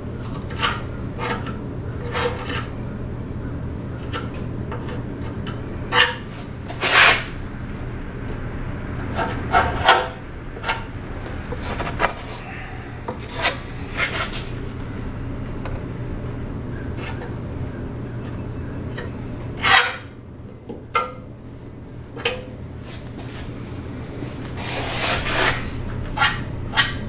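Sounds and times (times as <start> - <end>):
steady low hum: 0.0 - 27.0
hand scraping car panel: 13.1 - 14.6, 22.8 - 27.0.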